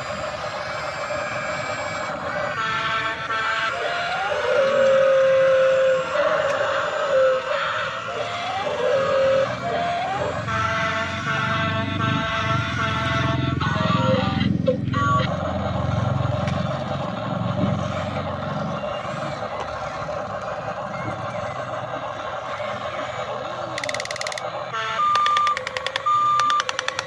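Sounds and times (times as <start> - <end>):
toy excavator electric whir: 0.0 - 27.0
electronic beeping with fast clicking: 23.7 - 27.0.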